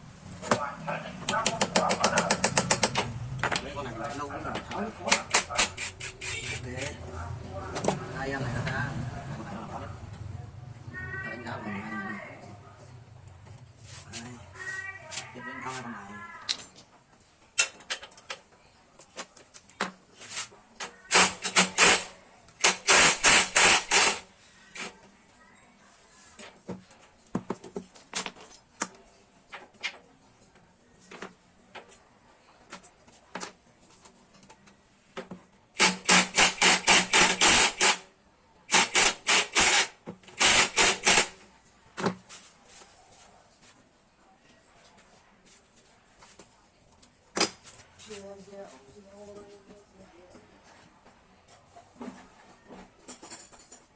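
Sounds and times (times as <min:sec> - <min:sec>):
ratchet wrench clicking: 0:05.1 - 0:06.9, 0:21.1 - 0:24.2, 0:35.8 - 0:38.0, 0:38.7 - 0:41.3.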